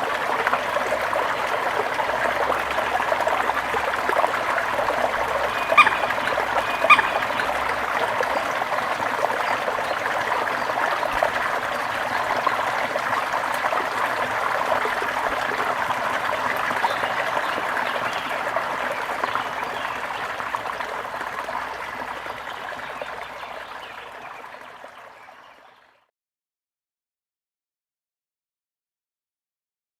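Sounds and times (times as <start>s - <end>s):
brook water rushing and splashing: 0.0s - 25.8s.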